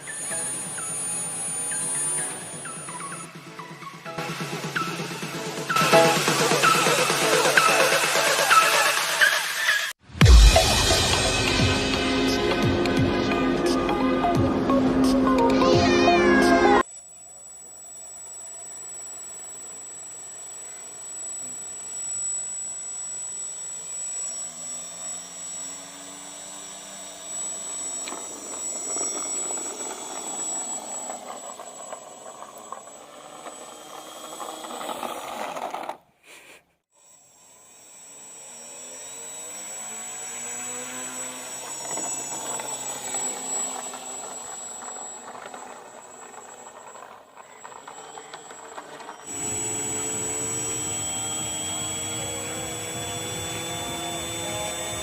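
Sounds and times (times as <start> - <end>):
small electric motor whining: 0.0 - 10.0, 10.8 - 36.0, 36.9 - 55.0.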